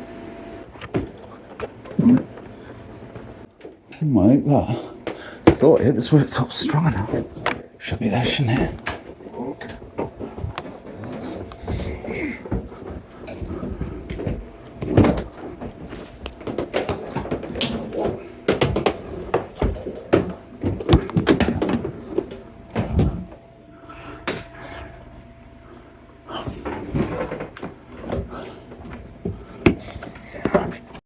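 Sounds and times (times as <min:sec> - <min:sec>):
knocks clicks and clattering of hoses: 0:07.1 - 0:23.4.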